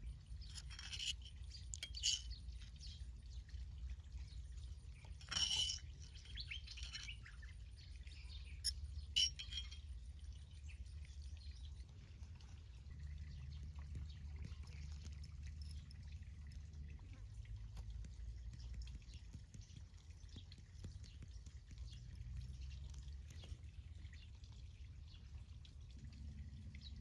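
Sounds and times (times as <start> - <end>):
birds chirping: 0.4 - 3.4, 4.2 - 9.8.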